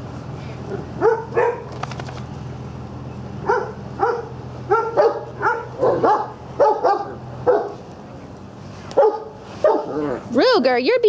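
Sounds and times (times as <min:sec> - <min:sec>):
large dog barking: 0:00.7 - 0:01.7, 0:03.4 - 0:07.8, 0:09.0 - 0:10.2.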